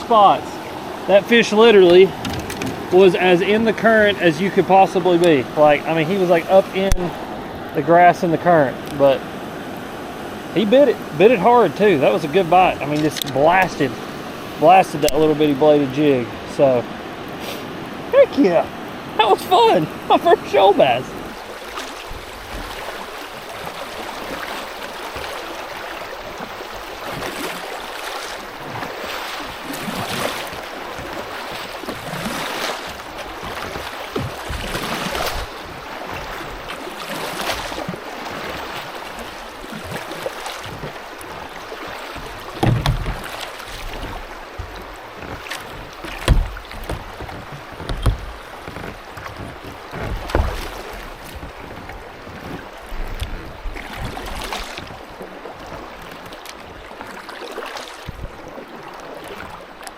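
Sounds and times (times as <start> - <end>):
river water rushing over rocks: 0.0 - 59.9
dull knocks: 1.8 - 3.0, 32.8 - 36.8, 39.8 - 55.0.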